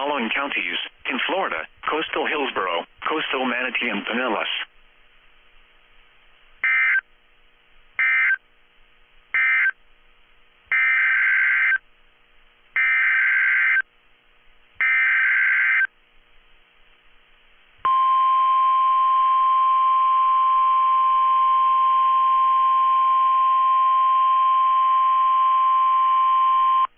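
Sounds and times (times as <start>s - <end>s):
steady alarm tone: 6.6s - 7.0s, 8.0s - 8.4s, 9.4s - 9.8s, 10.7s - 11.8s, 12.8s - 13.8s, 14.8s - 15.9s.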